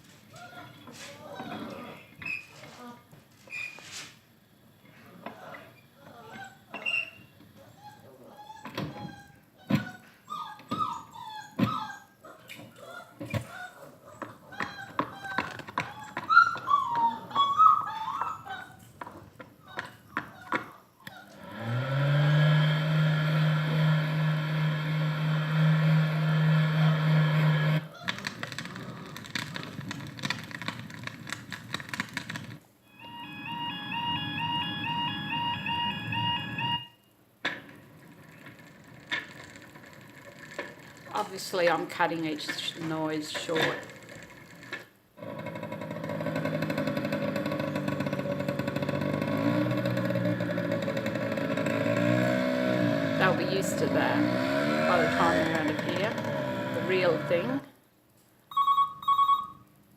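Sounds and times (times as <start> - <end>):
engine running: 21.4 - 27.8, 45.2 - 57.6
motor winding up and humming: 21.4 - 27.9, 43.9 - 57.7.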